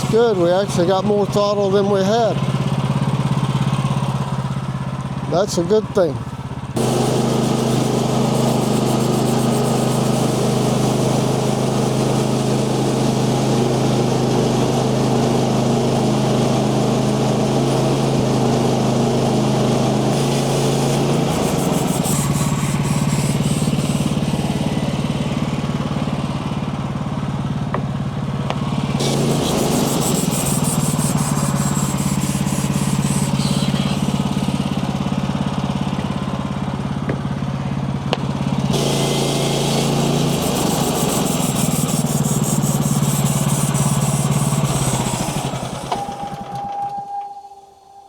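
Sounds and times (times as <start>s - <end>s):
small gasoline engine running: 0.0s - 46.8s.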